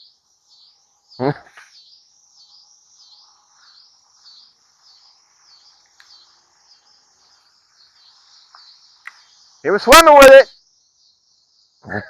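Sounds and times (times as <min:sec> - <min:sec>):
high insect buzz: 0:00.0 - 0:12.0
faint click: 0:05.8 - 0:06.2.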